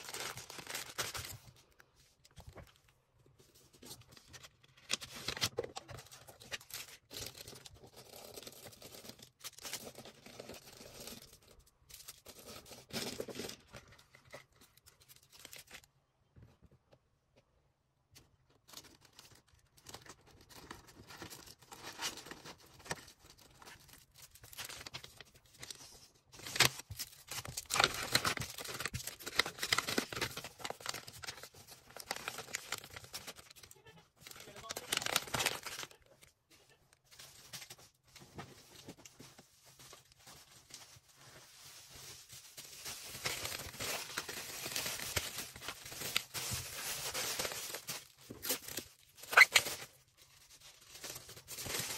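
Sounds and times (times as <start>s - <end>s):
plastic packaging crinkling: 0.0s - 2.8s, 18.6s - 36.3s, 37.0s - 51.9s.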